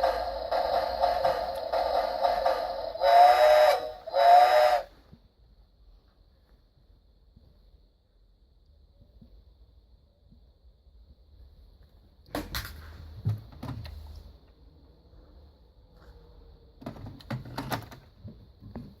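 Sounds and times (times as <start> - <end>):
faint high whine: 0.0 - 11.7.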